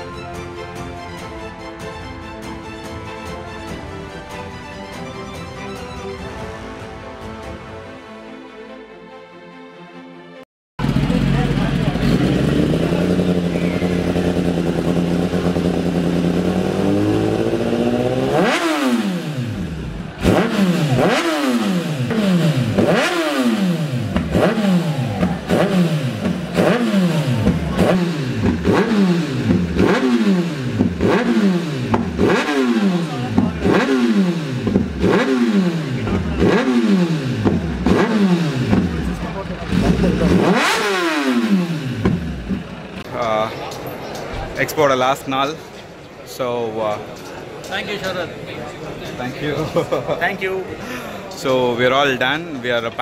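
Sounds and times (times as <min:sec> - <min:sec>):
motorcycle engine idling and revving: 0:10.8 - 0:44.3.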